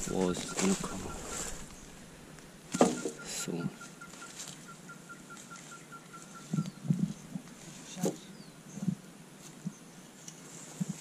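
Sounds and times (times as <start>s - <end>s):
faint bird chirps: 0.0s - 2.1s, 2.7s - 9.0s
rapid even chirping: 0.0s - 7.3s.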